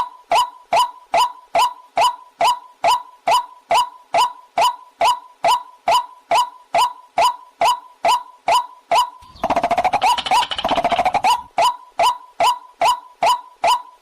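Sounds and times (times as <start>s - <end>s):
bird chattering burst: 9.2s - 11.5s.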